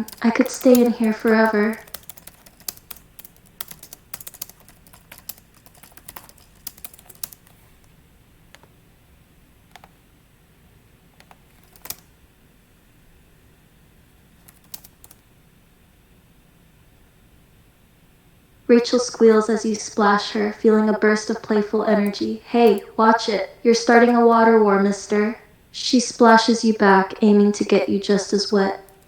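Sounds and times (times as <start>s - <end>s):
typing on a keyboard: 0.0s - 7.6s, 9.7s - 10.0s, 11.2s - 12.0s, 14.4s - 15.2s, 22.0s - 22.9s.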